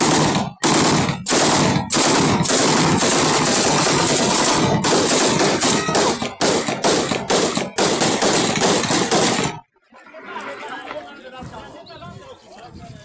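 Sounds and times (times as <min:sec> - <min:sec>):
rifle firing full-auto bursts: 0:00.0 - 0:09.6.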